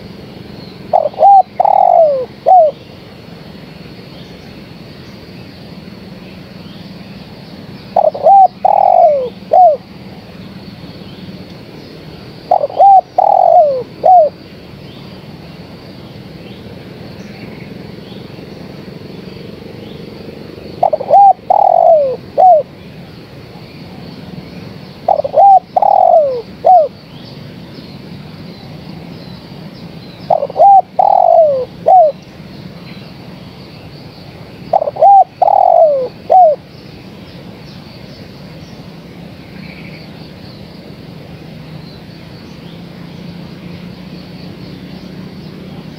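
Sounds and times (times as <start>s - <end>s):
faint hiss: 0.0s - 45.9s
dove cooing: 0.9s - 2.8s, 8.0s - 9.9s, 12.5s - 14.4s, 20.8s - 22.7s, 25.0s - 26.9s, 30.3s - 32.2s, 34.7s - 36.6s.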